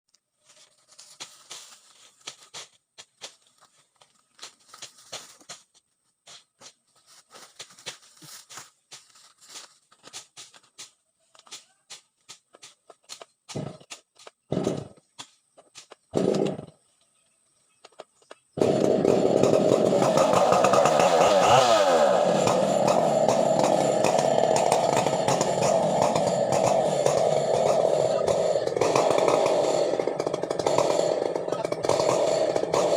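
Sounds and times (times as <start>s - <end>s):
chainsaw engine running: 14.5s - 15.0s, 16.1s - 16.8s, 18.6s - 32.9s.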